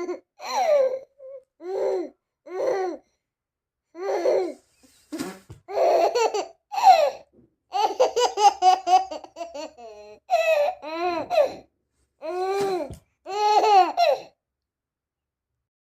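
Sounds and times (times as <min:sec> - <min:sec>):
baby laughing: 0:05.7 - 0:11.6, 0:12.2 - 0:14.3.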